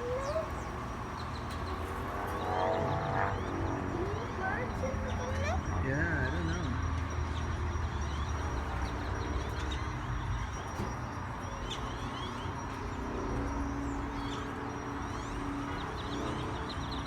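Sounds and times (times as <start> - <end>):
flock of birds chirping: 0.0 - 17.0
low traffic rumble: 0.0 - 17.0.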